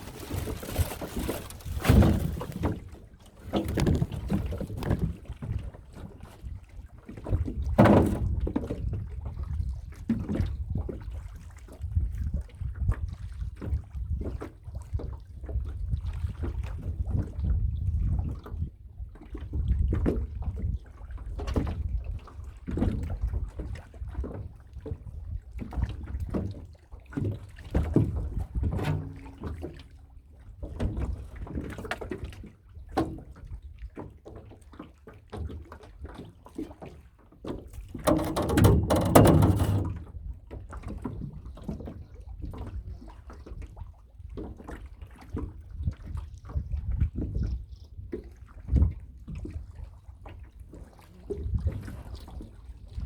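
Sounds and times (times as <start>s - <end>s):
water splashing: 0.0s - 5.4s, 28.6s - 29.8s
knocks on a small boat: 7.2s - 9.0s, 27.2s - 29.9s, 37.8s - 40.2s.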